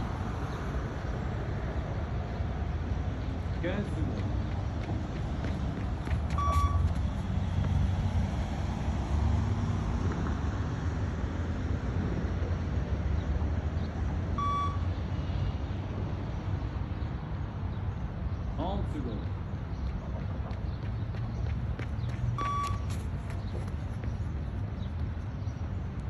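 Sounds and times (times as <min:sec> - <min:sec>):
short electronic beeps: 0:06.4 - 0:06.9, 0:14.4 - 0:14.9, 0:22.4 - 0:22.9.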